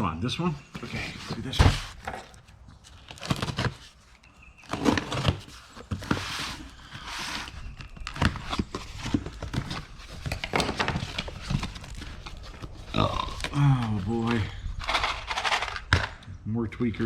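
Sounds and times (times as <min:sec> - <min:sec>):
cardboard box rustling and knocks: 0:01.4 - 0:02.4.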